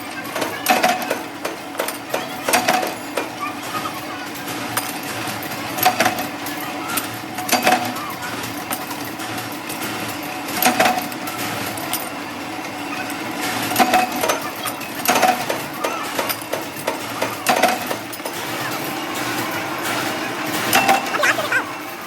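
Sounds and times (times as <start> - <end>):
metal parts knocking: 0.0 - 22.0
workshop machinery humming: 0.0 - 22.0.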